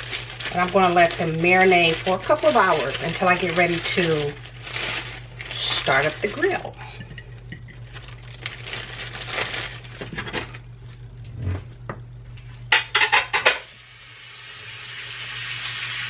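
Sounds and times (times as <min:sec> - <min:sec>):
low steady hum: 0:00.0 - 0:16.0
dishes clattering: 0:12.7 - 0:13.6.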